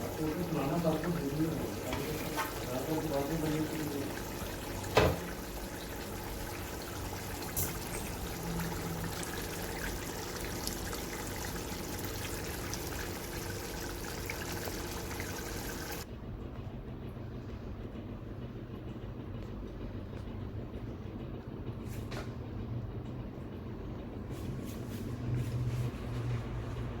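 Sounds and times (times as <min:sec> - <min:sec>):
water hissing and trickling: 0:00.0 - 0:16.0.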